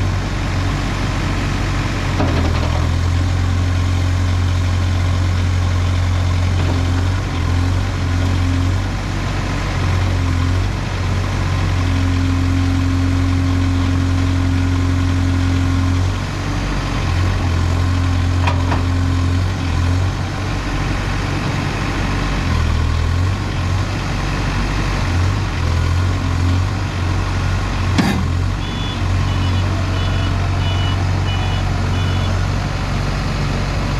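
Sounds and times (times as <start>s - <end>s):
diesel engine running: 0.0s - 33.9s
reversing alarm beeping: 28.6s - 32.4s.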